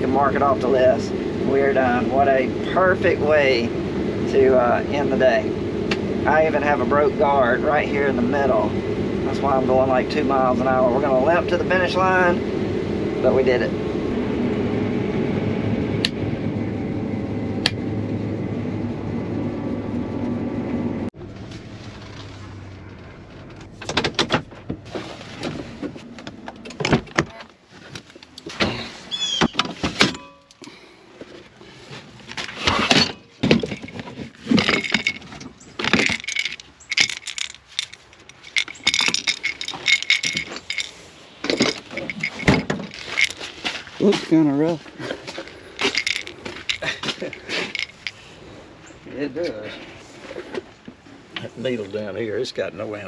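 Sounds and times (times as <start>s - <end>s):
combine harvester running: 0.0s - 27.0s, 31.9s - 48.6s
irregular clinks and rattles: 32.6s - 43.8s, 45.0s - 49.0s.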